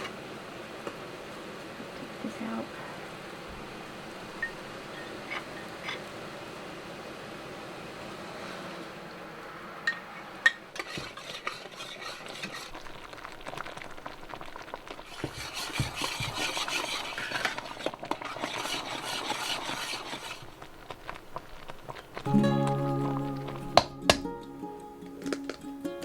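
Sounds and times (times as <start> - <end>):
utensil stirring in a pot: 10.4 - 22.2.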